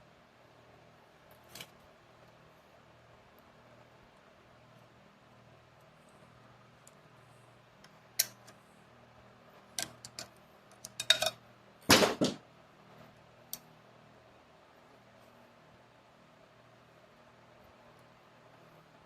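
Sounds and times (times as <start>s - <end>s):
metal clicks and clanks of tools: 9.8s - 11.4s.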